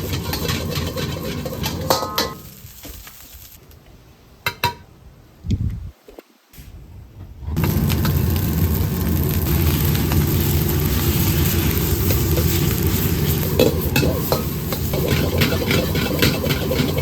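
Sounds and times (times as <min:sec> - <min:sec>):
food sizzling in a wok: 0:00.0 - 0:03.6, 0:07.6 - 0:17.0
low rumble: 0:06.8 - 0:15.0
spatula clicking and scraping: 0:13.6 - 0:17.0.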